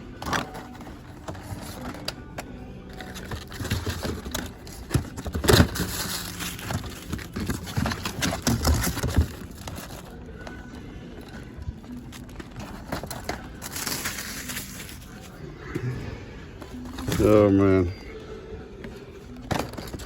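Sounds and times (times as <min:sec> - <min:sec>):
packaging rustling and crinkling: 0:02.9 - 0:15.4.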